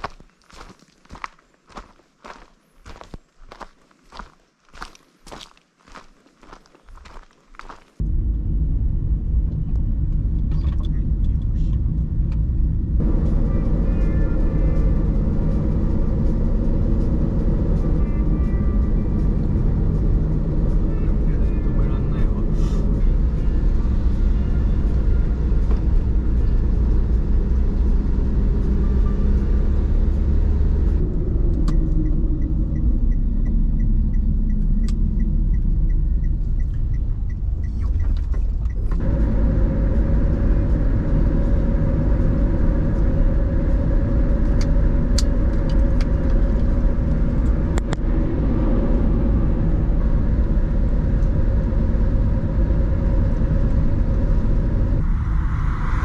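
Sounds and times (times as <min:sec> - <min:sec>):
car road and engine rumble: 0:00.0 - 0:56.0
regular ticking: 0:30.9 - 0:48.3.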